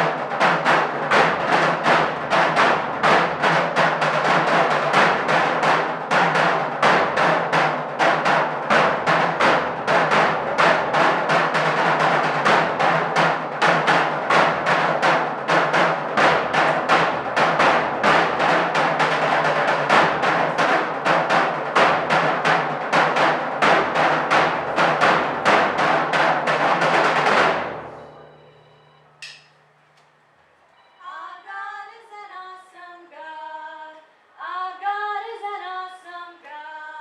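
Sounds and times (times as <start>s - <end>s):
group of drums beating: 0.0s - 29.4s.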